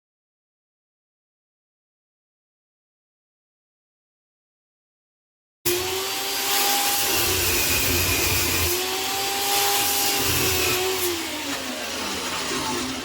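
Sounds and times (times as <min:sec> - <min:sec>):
metal lathe whining: 0:05.7 - 0:13.0.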